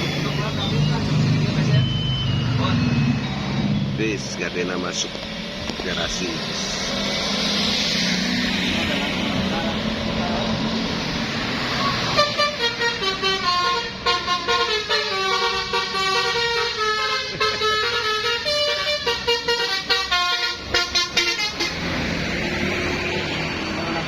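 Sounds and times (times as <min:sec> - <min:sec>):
road noise: 0:00.0 - 0:24.0
multi-tone musical bus horn: 0:11.8 - 0:22.0.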